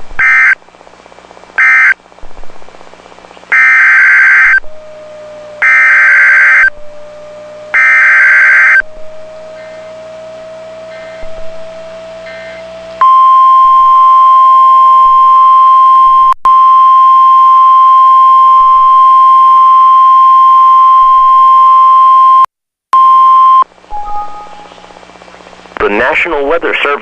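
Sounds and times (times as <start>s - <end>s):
loud steady high alert tone: 3.5s - 14.1s, 23.5s - 25.3s.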